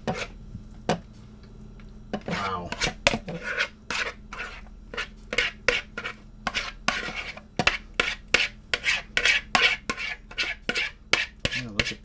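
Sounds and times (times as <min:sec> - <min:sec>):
utensil scraping a pot: 0:00.0 - 0:00.4, 0:02.2 - 0:12.0.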